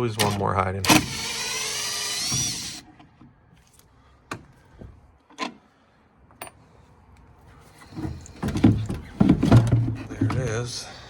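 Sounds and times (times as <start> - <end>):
power driver motor whine: 0.2 - 2.8.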